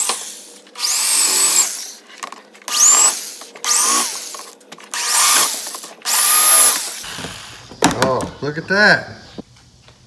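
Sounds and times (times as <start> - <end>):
electric drill whining: 0.0 - 2.0, 2.7 - 7.8.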